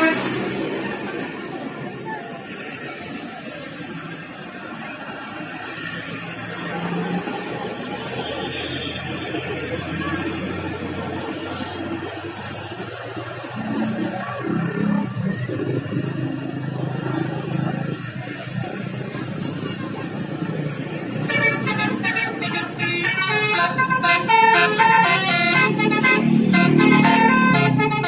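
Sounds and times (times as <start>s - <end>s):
bus horn playing a fast tune: 0.0s - 0.8s, 21.2s - 28.0s
bus engine rumble: 0.0s - 28.0s.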